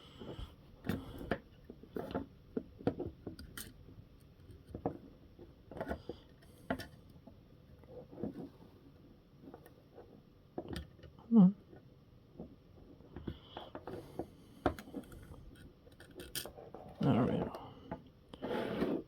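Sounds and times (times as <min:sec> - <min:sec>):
small clicks and taps of parts: 0:00.8 - 0:07.4, 0:13.1 - 0:16.5.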